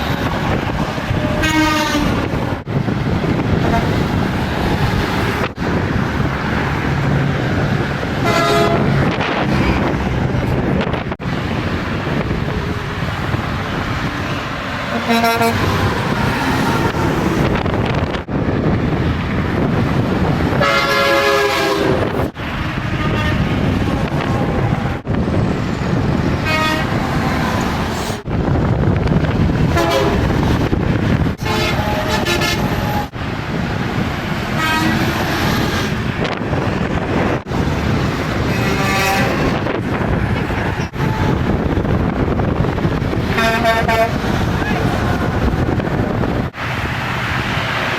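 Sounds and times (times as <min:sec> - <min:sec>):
heavy highway traffic: 0:00.0 - 0:47.9
truck air horns honking: 0:01.3 - 0:02.4, 0:08.2 - 0:09.1, 0:14.8 - 0:17.1, 0:20.6 - 0:24.2, 0:26.4 - 0:27.0, 0:29.7 - 0:30.3, 0:31.4 - 0:33.1, 0:34.6 - 0:35.2, 0:38.4 - 0:39.7, 0:43.2 - 0:44.9.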